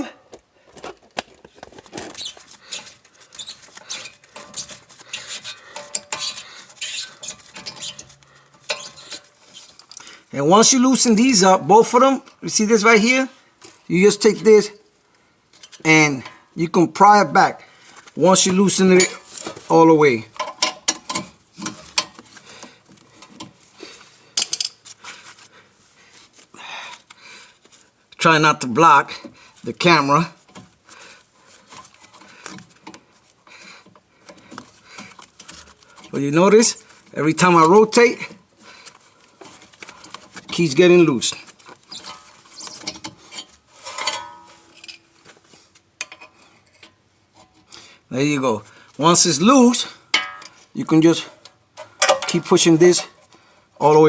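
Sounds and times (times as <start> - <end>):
metal tools clinking and scraping: 1.8 - 10.1, 15.5 - 16.5, 18.3 - 25.4, 31.5 - 47.6, 50.1 - 53.3
heavy breath: 25.0 - 27.6.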